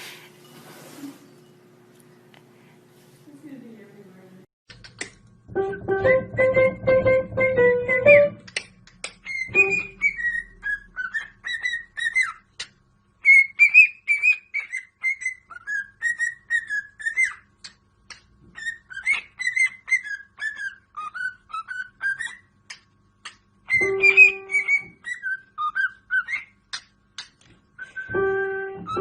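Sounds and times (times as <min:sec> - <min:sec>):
parrot whistling: 0:09.2 - 0:12.4, 0:13.2 - 0:17.5, 0:18.6 - 0:22.5, 0:23.6 - 0:26.6.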